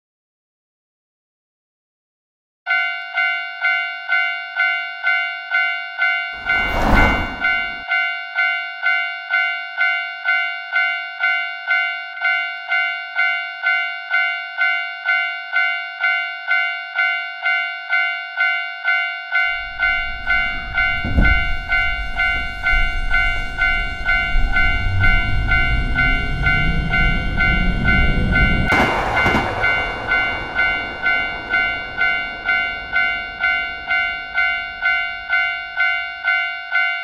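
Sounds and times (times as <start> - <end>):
railroad crossing bell dinging: 2.7 - 37.0
train passing with rumble: 6.4 - 7.9, 19.5 - 36.5.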